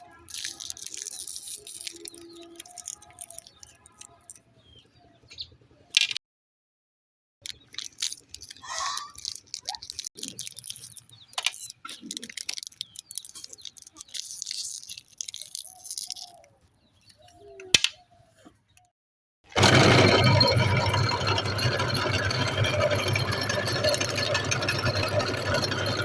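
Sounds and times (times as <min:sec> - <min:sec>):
candy balls rattling and clicking: 0:00.0 - 0:04.4, 0:07.4 - 0:16.6, 0:19.6 - 0:26.0
meat grinder motor running: 0:19.5 - 0:26.0.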